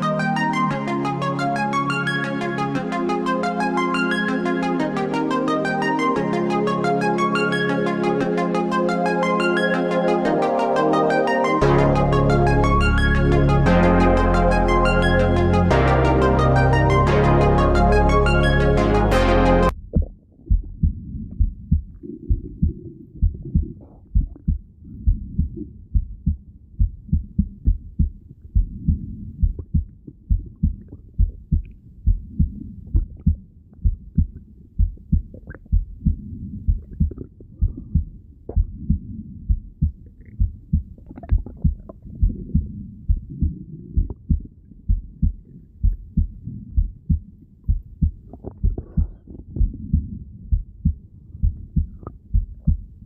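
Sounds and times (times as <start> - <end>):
heartbeat through stethoscope: 19.7 - 53.0
soft rumble: 19.7 - 53.0.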